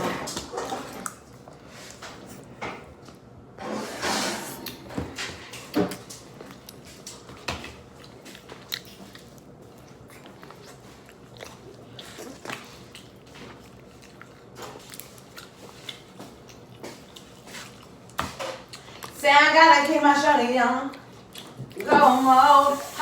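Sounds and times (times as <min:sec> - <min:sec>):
quiet chewing: 0:05.6 - 0:19.2, 0:20.9 - 0:21.9.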